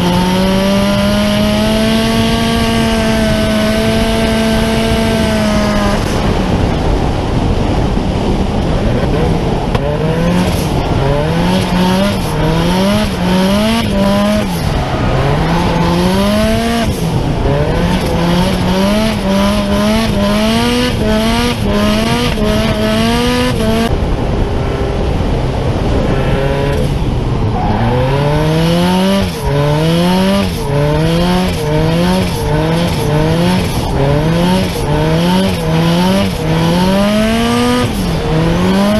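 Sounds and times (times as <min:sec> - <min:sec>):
car engine revving hard: 0:00.0 - 0:06.7, 0:08.9 - 0:23.9, 0:24.7 - 0:38.9
tires squealing: 0:10.1 - 0:18.4, 0:26.0 - 0:38.9.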